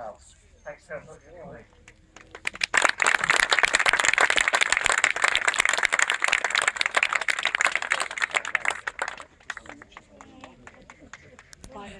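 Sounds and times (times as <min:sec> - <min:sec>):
audience applauding: 0:02.2 - 0:11.5.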